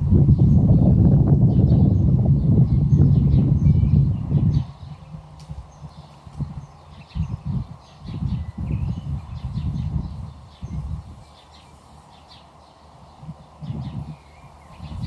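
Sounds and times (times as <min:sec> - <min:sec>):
low rumbling bursts: 0:00.0 - 0:11.1
birds chirping: 0:00.0 - 0:15.0.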